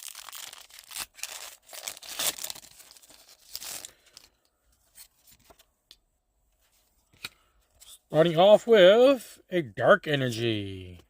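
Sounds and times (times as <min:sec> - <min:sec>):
foil wrapper tearing and crinkling: 0:00.0 - 0:04.3.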